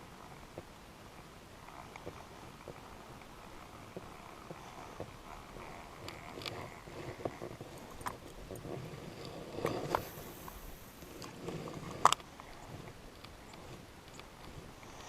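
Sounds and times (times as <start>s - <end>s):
faint high hiss: 9.1s - 15.0s.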